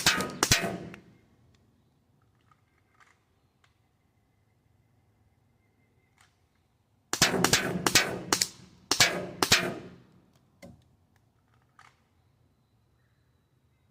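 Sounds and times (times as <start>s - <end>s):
pistol shots with ringing echo: 0.0s - 1.1s, 7.2s - 10.0s.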